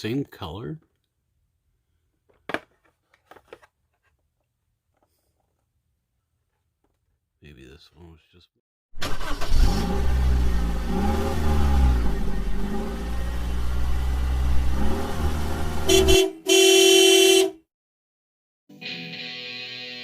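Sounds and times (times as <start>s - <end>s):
car engine revving: 9.0s - 16.3s
car horn honking: 15.8s - 17.6s
guitar music: 18.7s - 20.0s.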